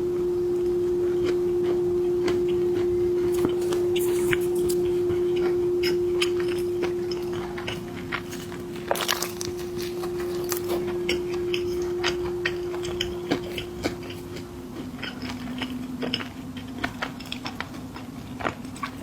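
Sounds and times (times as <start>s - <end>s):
steady low hum: 0.0s - 19.0s
crunching snacks: 3.3s - 4.9s, 6.3s - 19.0s.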